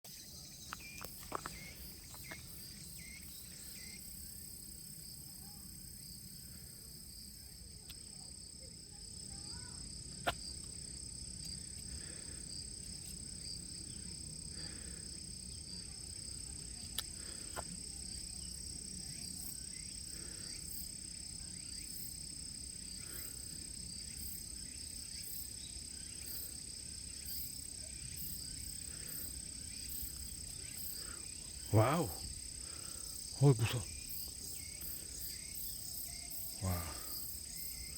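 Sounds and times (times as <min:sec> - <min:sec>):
insect rapid pulsing: 0:00.1 - 0:37.9
insects trilling: 0:00.1 - 0:37.9.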